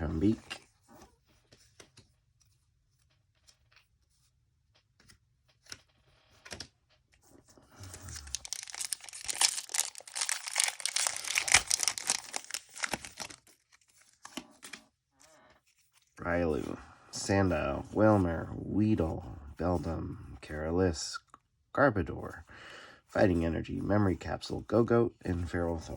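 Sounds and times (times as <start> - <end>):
foil wrapper tearing and crinkling: 7.8 - 14.8.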